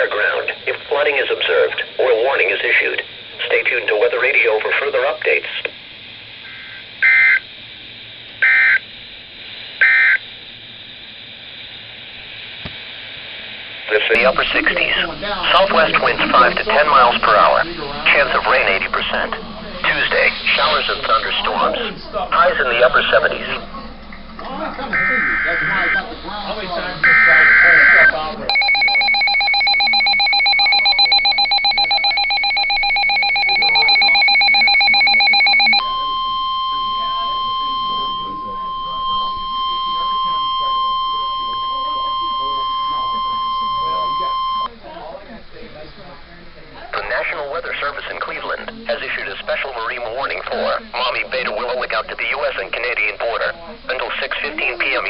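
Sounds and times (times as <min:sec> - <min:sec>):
radio hiss: 0:00.0 - 0:55.0
warbling two-tone data bursts: 0:13.8 - 0:23.6, 0:25.0 - 0:44.7.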